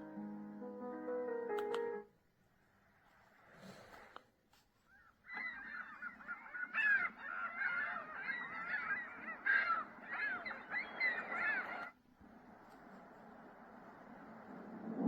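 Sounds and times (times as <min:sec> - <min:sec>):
flock of birds calling: 0:04.9 - 0:12.0.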